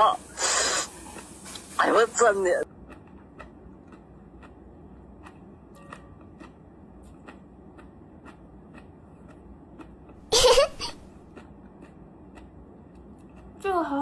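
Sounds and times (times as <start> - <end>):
crunchy chewing: 2.6 - 13.6.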